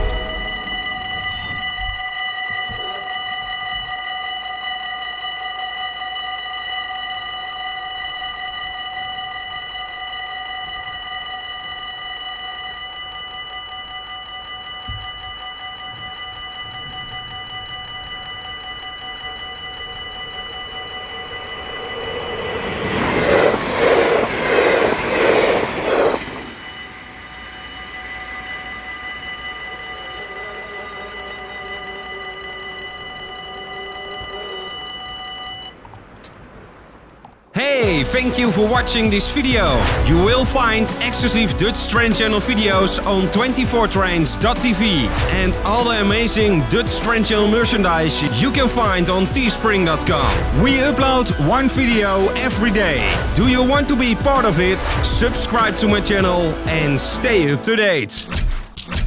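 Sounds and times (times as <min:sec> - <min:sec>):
level crossing warning bell: 0:00.0 - 0:58.3
train wheels clattering over rails: 0:14.8 - 0:57.2.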